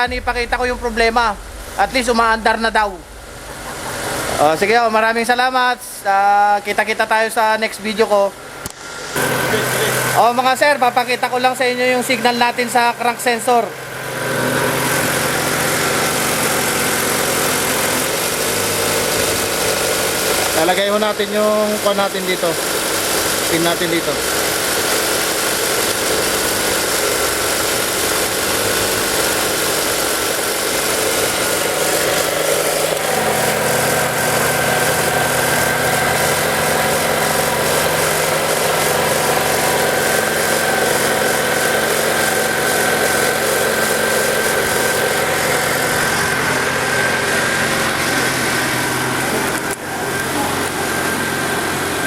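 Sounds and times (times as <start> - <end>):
car engine idling: 0.0 - 5.3, 15.5 - 51.2
steady low hum: 0.0 - 6.2.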